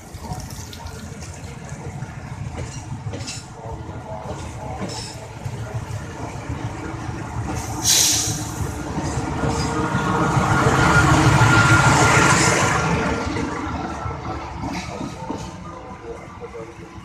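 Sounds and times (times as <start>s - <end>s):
train passing: 0.0s - 17.0s
sharp hiss of air: 7.8s - 8.7s.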